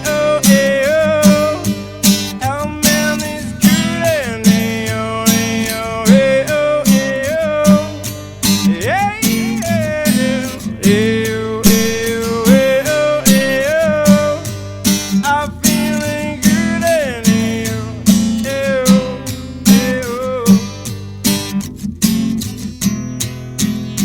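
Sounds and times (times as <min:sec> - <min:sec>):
acoustic guitar instrumental: 0:00.0 - 0:24.0
percussive hits on guitar: 0:11.6 - 0:13.7.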